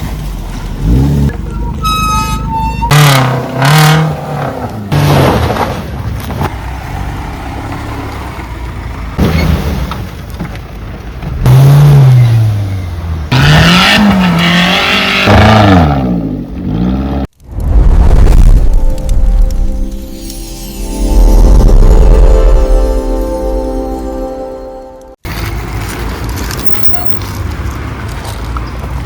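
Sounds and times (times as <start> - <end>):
off-road engine revving: 0.5 - 5.3, 11.4 - 17.3.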